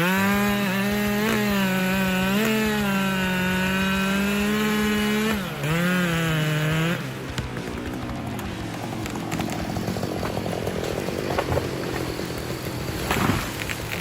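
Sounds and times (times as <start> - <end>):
chainsaw cutting wood: 0.0 - 14.0.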